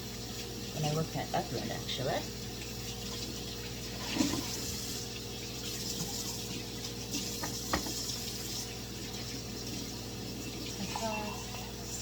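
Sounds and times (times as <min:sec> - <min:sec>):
dishes being washed: 0:00.0 - 0:12.0
tap water running into sink: 0:00.0 - 0:12.0.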